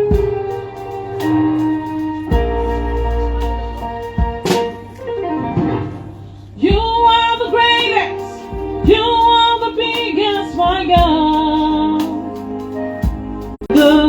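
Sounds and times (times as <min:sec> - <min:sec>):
low drum beat: 0:00.0 - 0:05.0, 0:06.6 - 0:07.6, 0:08.4 - 0:12.1, 0:13.0 - 0:14.0
backing band playing: 0:00.0 - 0:14.0.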